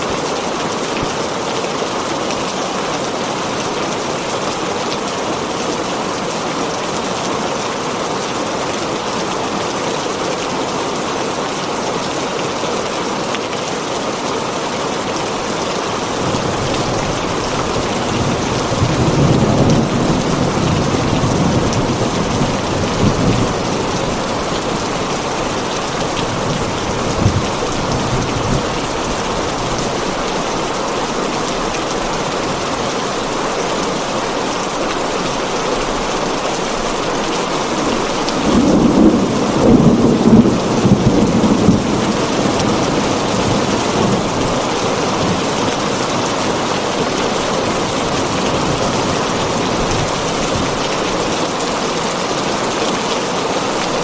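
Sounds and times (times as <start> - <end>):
heavy rain on a tin roof: 0.0 - 54.0
thunder rolling: 16.2 - 30.2, 37.6 - 45.6.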